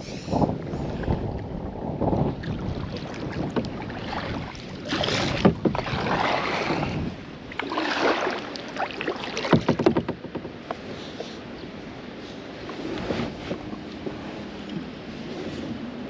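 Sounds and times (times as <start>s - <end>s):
wind buffeting microphone: 0.0s - 16.0s
paddle splashing in water: 2.1s - 11.4s.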